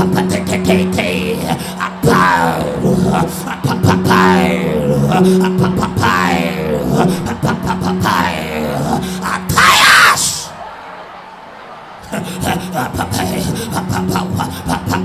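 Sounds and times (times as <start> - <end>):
person vocalising: 1.1 - 10.2, 12.2 - 15.0.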